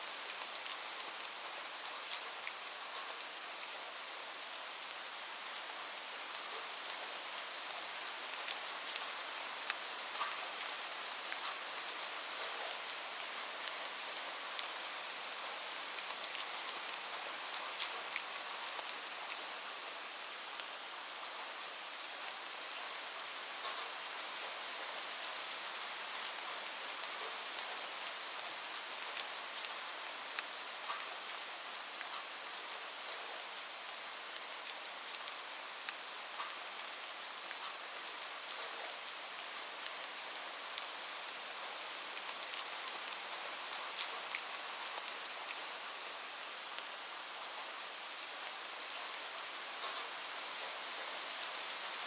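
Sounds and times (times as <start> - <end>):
raindrops ticking on a surface: 0.0 - 3.8, 4.4 - 52.0
light rain falling: 0.0 - 52.0.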